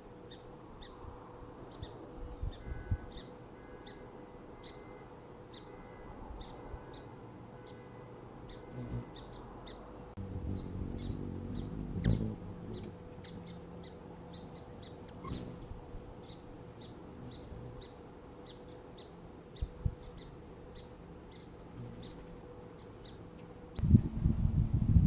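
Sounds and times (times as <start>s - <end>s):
bird chirping: 1.7s - 23.8s.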